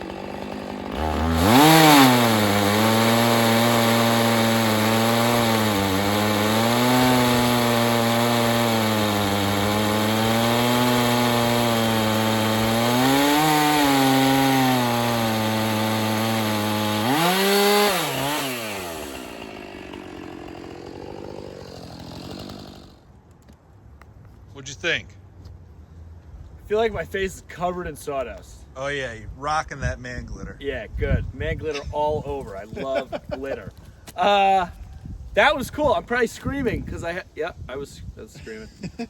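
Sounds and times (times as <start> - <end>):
chainsaw cutting log: 0.0 - 23.1, 31.8 - 34.8.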